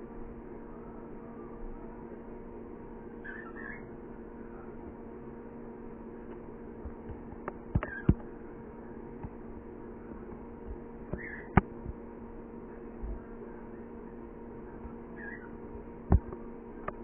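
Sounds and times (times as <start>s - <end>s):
steady low hum: 0.0s - 17.0s
pet bird chirp: 3.2s - 3.9s, 7.8s - 8.2s, 11.1s - 11.6s, 15.2s - 15.6s.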